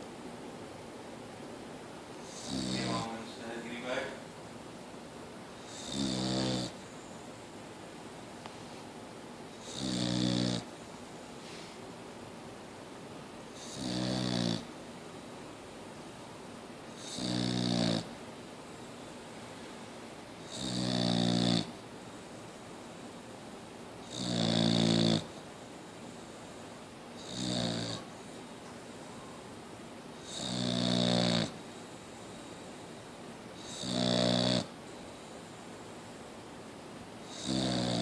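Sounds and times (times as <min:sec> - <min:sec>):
dog snoring: 0:02.2 - 0:04.2, 0:05.6 - 0:07.1, 0:09.5 - 0:10.7, 0:13.5 - 0:14.7, 0:16.9 - 0:18.2, 0:20.4 - 0:21.8, 0:24.0 - 0:25.4, 0:26.1 - 0:28.4, 0:30.2 - 0:35.4, 0:37.2 - 0:38.0.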